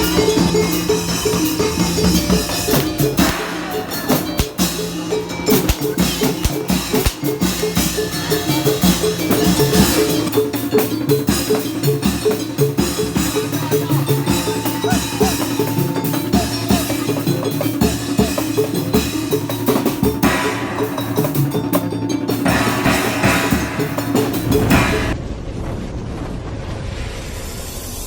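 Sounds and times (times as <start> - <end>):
held tones: 0.0 - 24.9
drums and percussion beat: 0.0 - 25.2.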